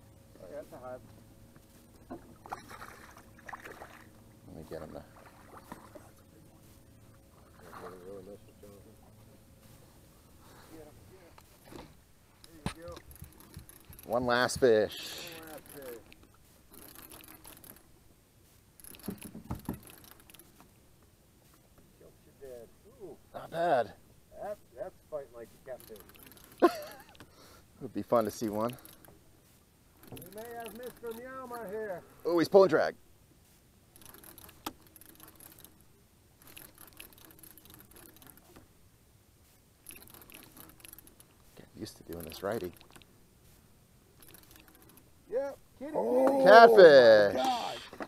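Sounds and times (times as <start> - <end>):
light clicks and rattles: 10.7 - 22.6, 25.4 - 32.7, 33.4 - 38.8, 39.4 - 45.2
fishing reel ticking: 12.4 - 17.9, 18.8 - 20.6, 25.6 - 27.2, 28.1 - 29.2, 29.9 - 32.5, 33.9 - 38.6, 39.8 - 43.1, 44.2 - 45.2.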